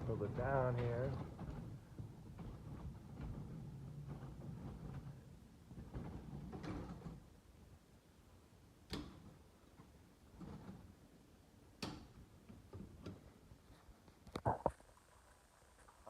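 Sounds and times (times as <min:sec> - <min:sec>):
garage door rumbling on rollers: 0:00.0 - 0:07.3.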